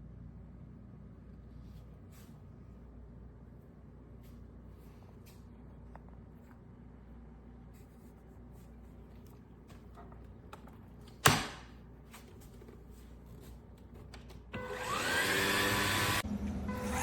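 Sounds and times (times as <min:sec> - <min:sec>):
vacuum cleaner motor whine: 0:14.6 - 0:17.0.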